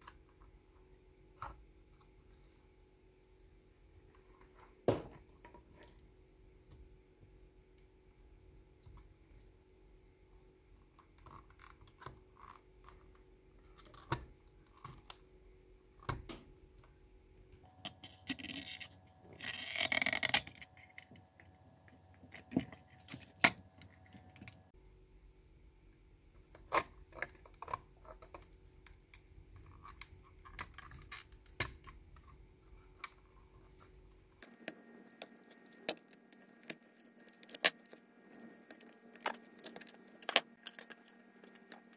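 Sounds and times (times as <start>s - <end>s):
small parts clicking and scratching: 8.7s - 15.2s, 17.6s - 24.8s, 26.5s - 41.9s.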